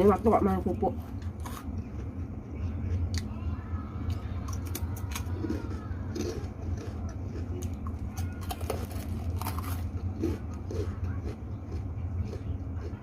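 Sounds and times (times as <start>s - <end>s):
steady low hum: 0.0s - 13.0s
crackers crunching when chewed: 1.0s - 3.4s, 4.1s - 13.0s.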